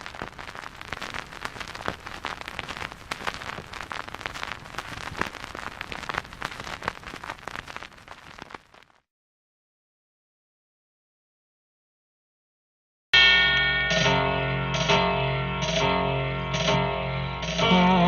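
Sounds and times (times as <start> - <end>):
rain pattering: 0.0 - 9.0.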